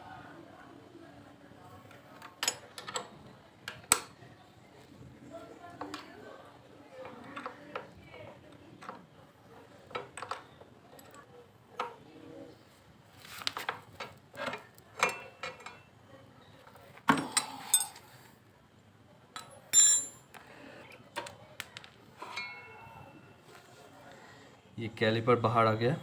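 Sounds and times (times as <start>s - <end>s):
metallic clinks of tools and bolts: 17.4s - 18.1s, 19.4s - 20.3s.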